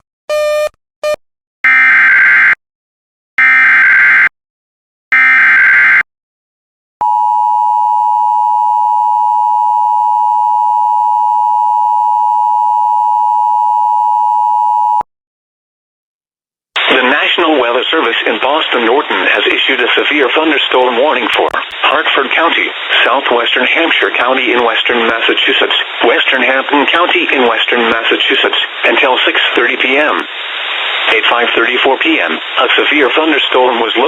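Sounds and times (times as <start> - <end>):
two-tone attention signal: 0.3 - 1.9.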